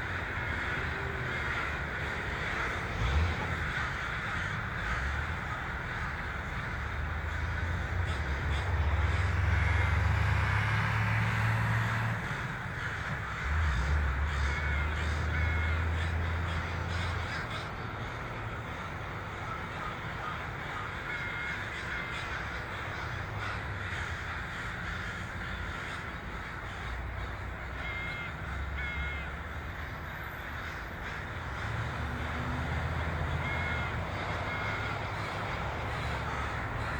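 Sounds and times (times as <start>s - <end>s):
flock of crows cawing: 0.0s - 36.9s.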